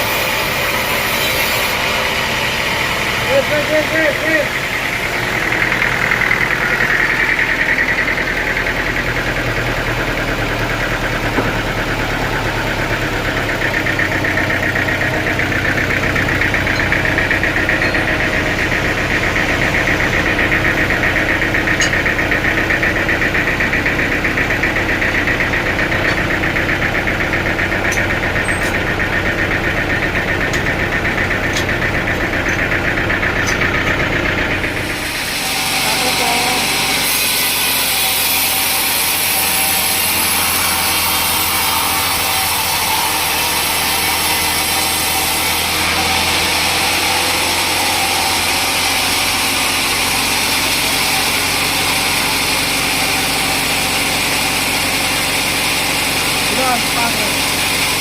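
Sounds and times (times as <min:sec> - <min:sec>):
sawmill saw droning: 0:00.0 - 0:58.0.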